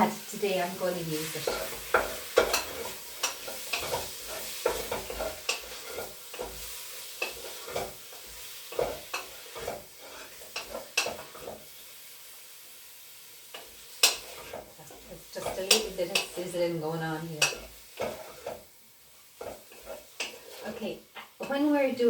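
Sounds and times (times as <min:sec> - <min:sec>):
chicken sizzling in a pot: 0:00.0 - 0:22.0
utensil scraping and knocking pot: 0:01.1 - 0:11.7, 0:13.5 - 0:18.7, 0:19.4 - 0:21.7.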